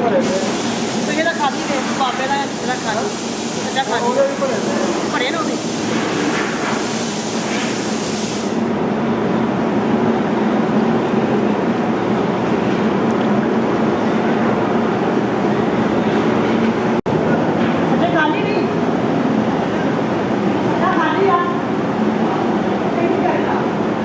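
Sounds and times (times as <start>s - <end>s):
workshop machinery running: 0.0s - 24.0s
high hiss: 0.2s - 8.7s.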